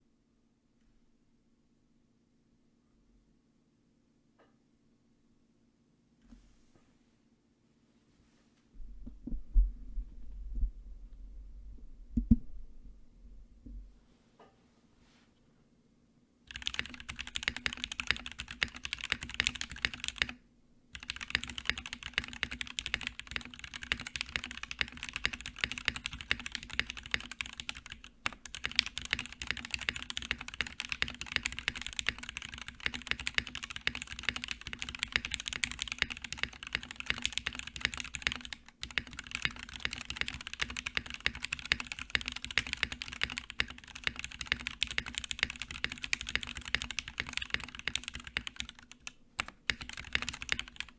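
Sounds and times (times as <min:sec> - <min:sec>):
fast typing on mechanical keyboard: 0:16.5 - 0:20.4, 0:21.0 - 0:50.9.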